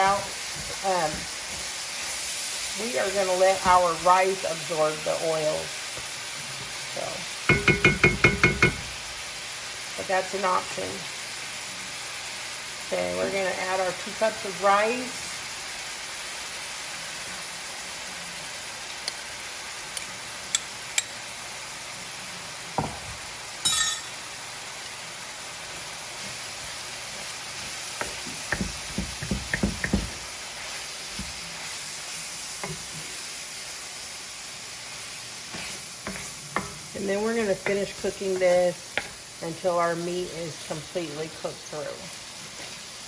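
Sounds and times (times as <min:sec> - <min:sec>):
meat and rice sizzling in a pan: 0:00.0 - 0:43.0
utensil knocking against pan: 0:07.5 - 0:08.9, 0:28.0 - 0:30.2.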